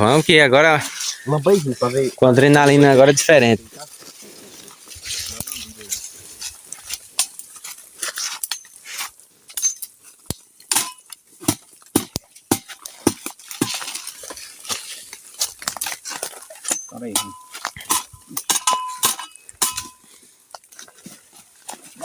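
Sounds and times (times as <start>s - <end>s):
brushing of vegetation: 0.8s - 10.3s, 12.8s - 18.2s
crunching of dry leaves: 0.8s - 22.0s
twigs snapping: 9.8s - 21.0s.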